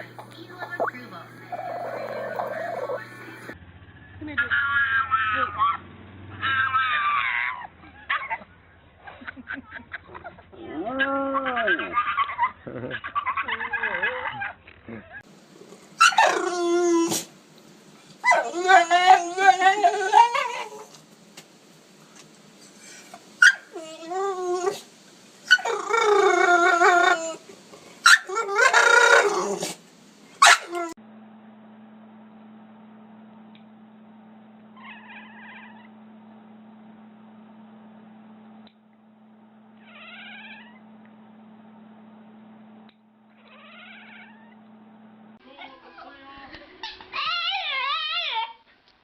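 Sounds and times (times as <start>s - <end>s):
dog howling: 1.4s - 3.6s, 6.4s - 8.4s, 16.0s - 17.3s, 18.2s - 21.0s, 23.4s - 24.9s, 25.5s - 27.4s, 28.0s - 29.8s, 30.4s - 31.0s, 34.8s - 36.0s
cat yowling: 1.5s - 3.1s, 4.4s - 5.8s, 6.4s - 8.4s, 34.8s - 35.9s, 39.8s - 40.8s, 43.4s - 44.6s, 47.1s - 48.5s.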